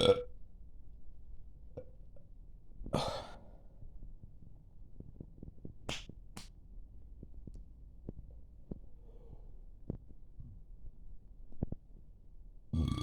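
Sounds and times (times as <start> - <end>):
person belching: 0.0 - 0.2, 12.8 - 13.0.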